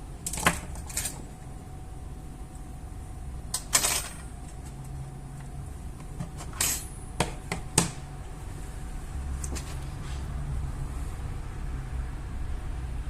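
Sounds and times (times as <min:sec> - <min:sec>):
low steady hum: 0:00.0 - 0:13.0
laptop parts clicking and knocking: 0:06.0 - 0:08.0.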